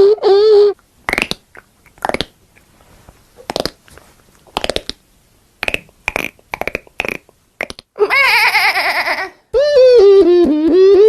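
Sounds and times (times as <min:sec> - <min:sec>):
mouth pops and clicks: 0:00.8 - 0:02.7, 0:03.4 - 0:08.0.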